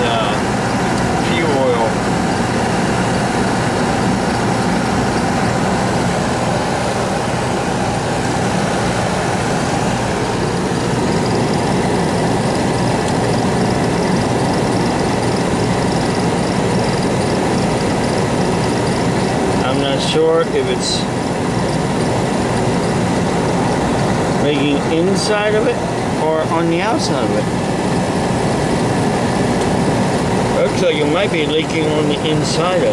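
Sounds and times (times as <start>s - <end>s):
furnace burner and blower: 0.0s - 32.9s.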